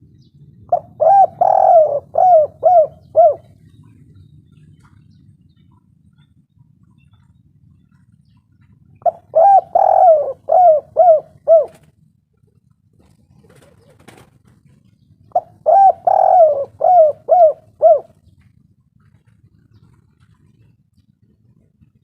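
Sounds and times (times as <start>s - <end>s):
dove cooing: 0.0s - 5.9s, 7.2s - 12.0s, 13.0s - 21.9s.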